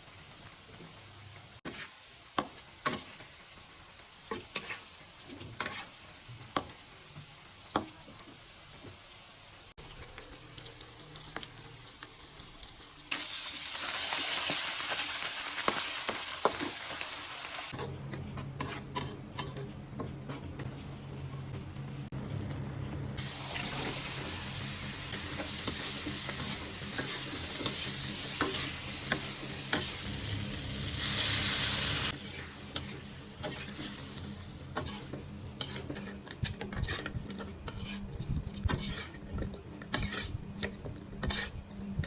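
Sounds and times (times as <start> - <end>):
food frying in oil: 0.0 - 17.8, 23.1 - 42.0
spatula scraping a pan: 1.6 - 3.3, 4.3 - 6.8, 17.7 - 20.7, 25.1 - 30.0, 32.0 - 42.0.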